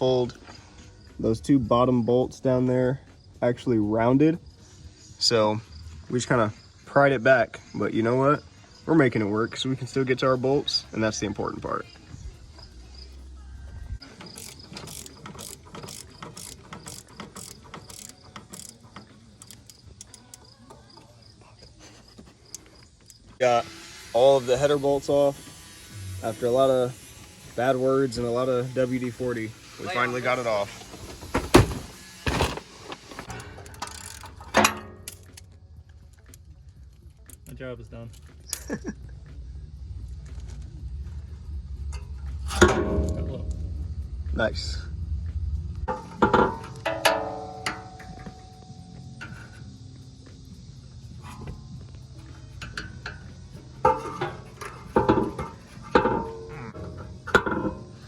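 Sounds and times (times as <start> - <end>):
socket ratchet clicking: 14.1 - 20.5, 33.7 - 36.5
metal clank ringing: 34.5 - 35.3, 41.9 - 43.8, 45.9 - 49.6, 52.6 - 58.0
low rumble: 39.4 - 46.9.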